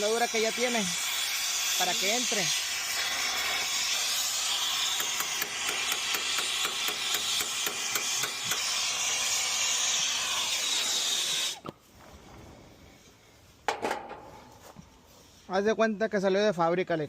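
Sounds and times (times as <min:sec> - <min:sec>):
torch flame hissing: 0:00.0 - 0:13.6.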